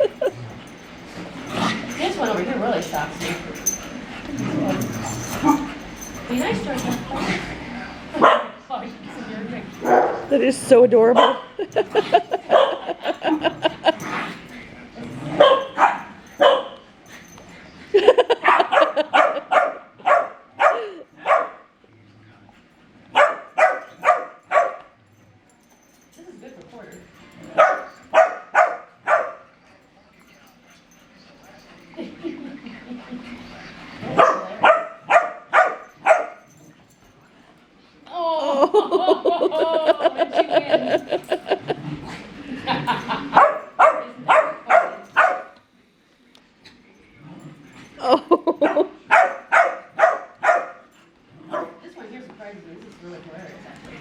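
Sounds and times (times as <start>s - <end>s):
puppies barking: 8.2s - 8.6s, 9.8s - 10.4s, 11.0s - 14.0s, 15.3s - 16.8s, 18.0s - 21.7s, 23.1s - 25.0s, 27.5s - 29.5s, 34.0s - 36.5s, 42.9s - 45.6s, 48.4s - 50.9s.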